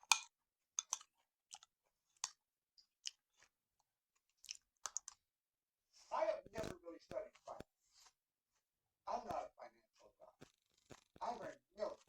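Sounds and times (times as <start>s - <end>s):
person chewing: 0.0s - 5.2s, 6.0s - 8.6s, 10.4s - 12.0s.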